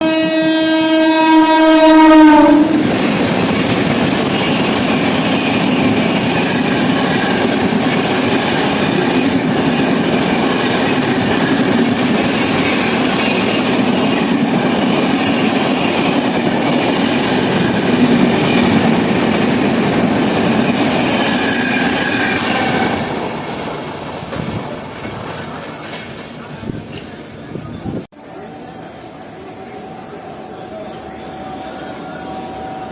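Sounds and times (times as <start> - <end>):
locomotive air horn blast: 0.0 - 3.0
train wheels roaring on rails: 0.0 - 32.9.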